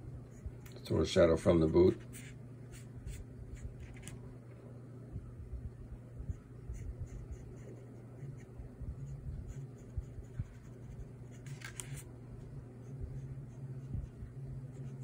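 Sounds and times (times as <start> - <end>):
low steady hum: 0.0 - 15.0
pen scratching on paper: 6.7 - 12.0.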